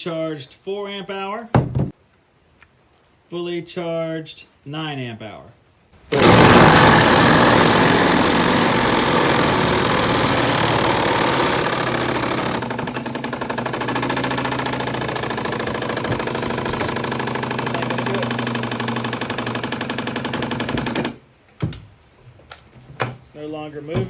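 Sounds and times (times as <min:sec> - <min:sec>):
impact driver driving screw: 0:06.1 - 0:21.2.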